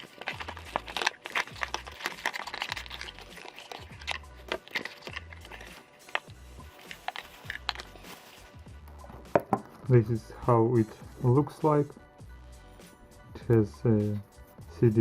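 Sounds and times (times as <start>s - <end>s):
packaging crinkling: 0.0s - 8.6s
background music with bass beat: 5.2s - 15.0s.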